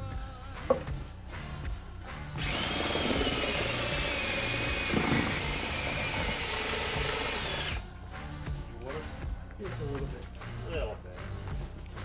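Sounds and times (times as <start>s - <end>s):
small motor whining: 2.4s - 7.8s.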